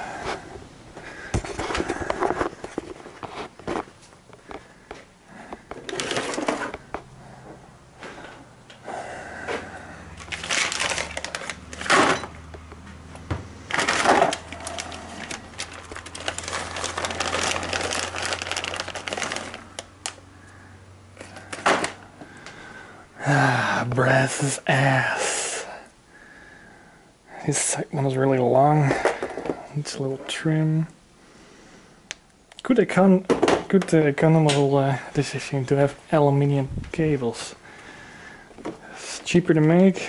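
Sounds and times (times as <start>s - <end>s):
low steady hum: 0.0s - 40.0s
hands rummaging among tools: 1.0s - 7.1s, 10.2s - 12.8s, 13.7s - 20.2s, 21.2s - 22.0s.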